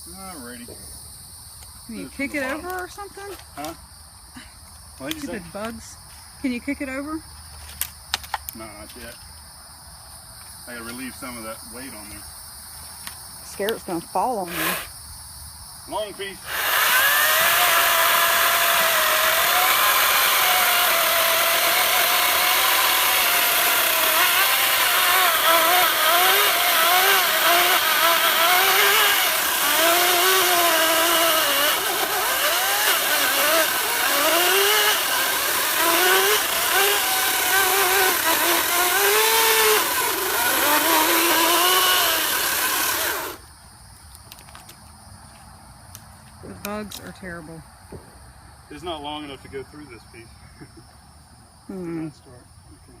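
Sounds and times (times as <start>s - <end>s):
chainsaw cutting through log: 14.4s - 14.9s, 16.4s - 43.4s.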